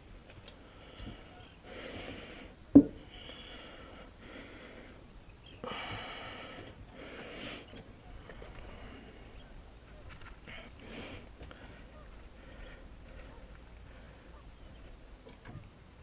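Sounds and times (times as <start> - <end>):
sharp thump: 2.8 - 3.0.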